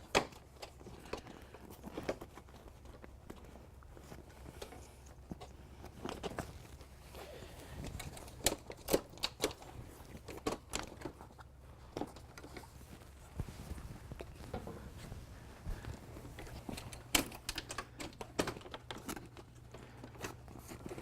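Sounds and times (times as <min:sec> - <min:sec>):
faint hum: 0:00.0 - 0:21.0
clicks and knocks of frame parts: 0:07.8 - 0:12.8, 0:16.2 - 0:21.0.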